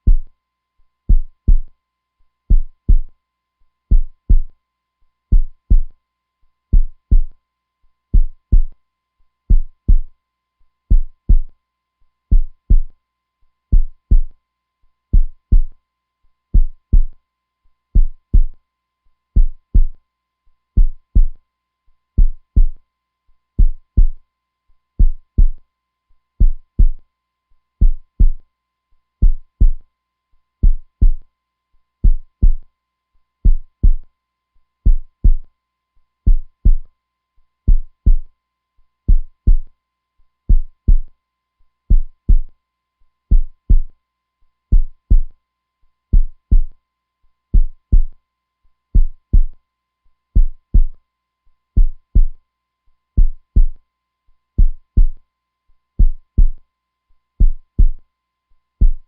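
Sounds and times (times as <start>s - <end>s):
heartbeat thumps: 0.1s - 0.3s, 1.1s - 1.7s, 2.5s - 3.1s, 3.9s - 4.5s, 5.3s - 5.9s, 6.7s - 7.3s, 8.2s - 8.7s, 9.5s - 10.1s, 10.9s - 11.5s, 12.3s - 12.9s, 13.7s - 14.3s, 15.2s - 15.7s, 16.6s - 17.1s, 18.0s - 18.6s, 19.4s - 20.0s, 20.8s - 21.4s, 22.2s - 22.8s, 23.6s - 24.2s, 25.0s - 25.6s, 26.4s - 27.0s, 27.8s - 28.4s, 29.2s - 29.8s, 30.6s - 31.2s, 32.0s - 32.6s, 33.4s - 34.0s, 34.9s - 35.4s, 36.3s - 36.9s, 37.7s - 38.3s, 39.1s - 39.7s, 40.5s - 41.1s, 41.9s - 42.5s, 43.3s - 43.9s, 44.7s - 45.3s, 46.1s - 46.7s, 47.6s - 48.1s, 49.0s - 49.6s, 50.4s - 51.0s, 51.8s - 52.4s, 53.2s - 53.8s, 54.6s - 55.2s, 56.0s - 56.6s, 57.4s - 58.0s.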